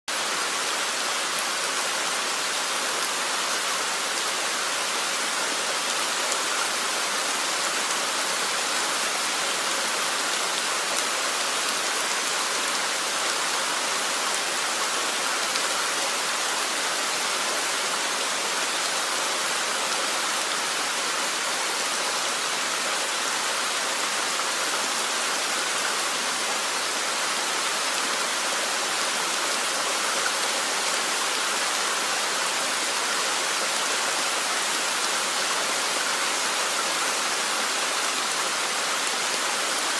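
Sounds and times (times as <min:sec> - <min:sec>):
steady rain falling: 0:00.1 - 0:39.9.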